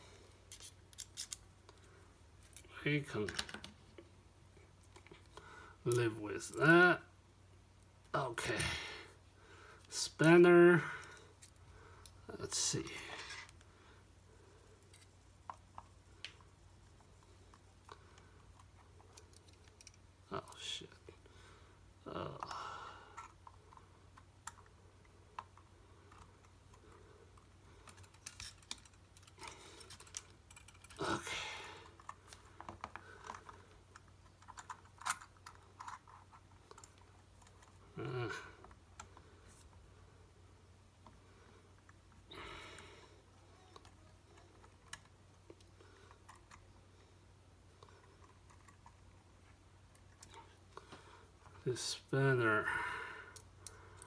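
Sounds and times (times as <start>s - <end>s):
faint low hum: 0.0s - 54.0s
small clicks of lens parts: 0.4s - 2.7s, 17.5s - 20.0s, 27.4s - 31.0s
metal lens parts clicking: 0.5s - 1.8s.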